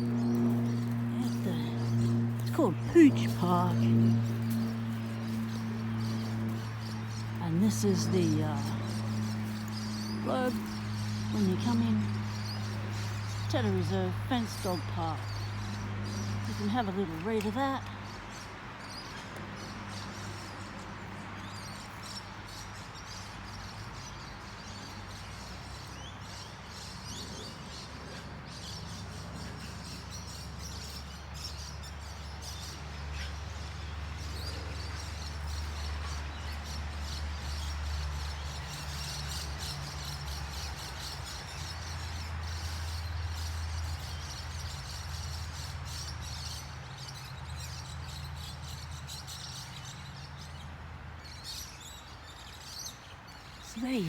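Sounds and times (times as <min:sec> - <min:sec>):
birds chirping faintly: 0:28.6 - 0:54.0.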